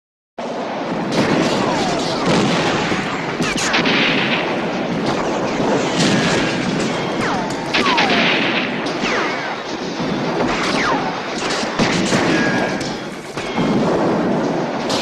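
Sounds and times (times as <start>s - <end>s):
massed gunfire: 0.6s - 15.0s.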